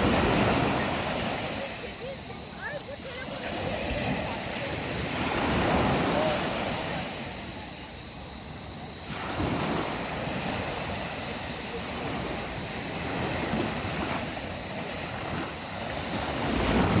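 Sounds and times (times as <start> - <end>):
waves breaking on shore: 0.0 - 17.0.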